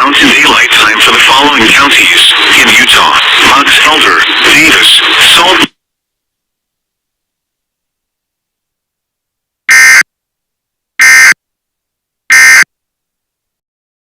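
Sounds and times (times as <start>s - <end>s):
loud digital data tone bursts: 9.7s - 10.0s, 11.0s - 11.4s, 12.3s - 12.6s.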